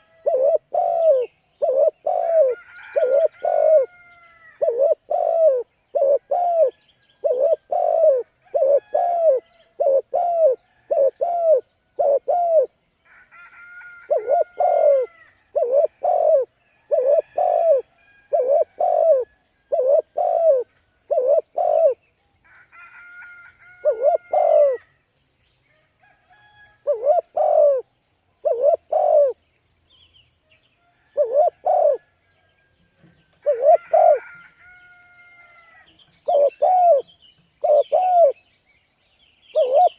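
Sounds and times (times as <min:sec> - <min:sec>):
dove cooing: 0:00.0 - 0:12.8, 0:13.9 - 0:22.0, 0:23.7 - 0:24.9, 0:26.8 - 0:29.4, 0:31.2 - 0:32.1, 0:33.3 - 0:38.4, 0:39.5 - 0:39.9.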